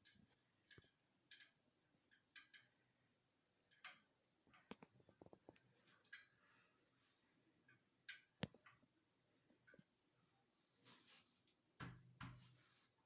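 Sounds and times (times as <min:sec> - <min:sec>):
faint clicks and taps: 0:03.7 - 0:06.4, 0:07.6 - 0:08.9.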